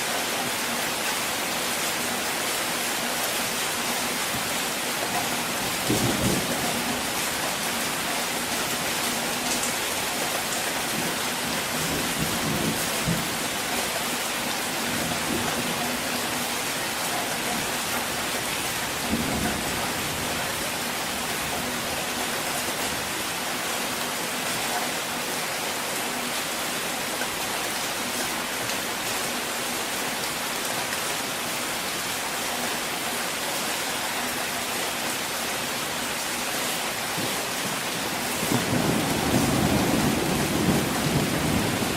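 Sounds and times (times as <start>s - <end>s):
rain drumming on a car: 0.0s - 41.9s
low thunder rumbling: 38.1s - 41.9s.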